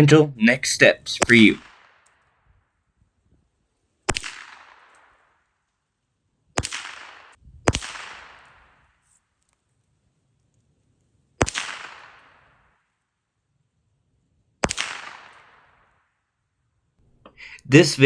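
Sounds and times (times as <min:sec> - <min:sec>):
rifle shots echoing: 0:14.6 - 0:15.3.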